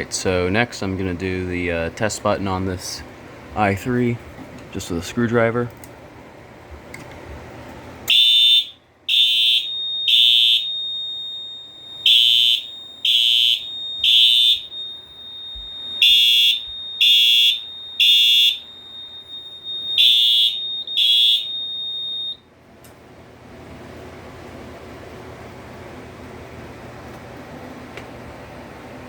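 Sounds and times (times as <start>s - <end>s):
fire alarm horn blasts: 8.0s - 22.5s.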